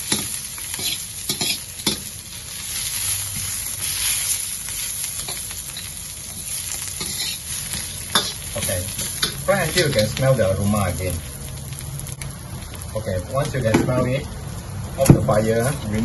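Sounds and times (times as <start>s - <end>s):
garlic sizzling in oil: 0.0s - 16.0s.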